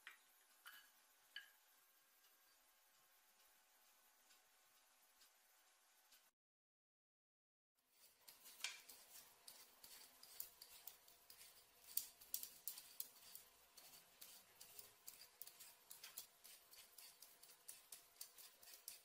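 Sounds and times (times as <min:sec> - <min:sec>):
kitchen utensils clicking and scraping: 0:07.9 - 0:19.0.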